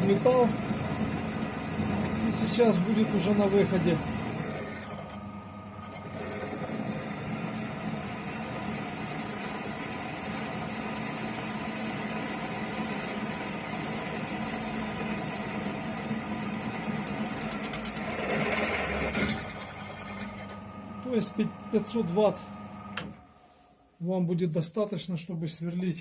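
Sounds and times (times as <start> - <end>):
drill press cutting metal: 0.0 - 20.7.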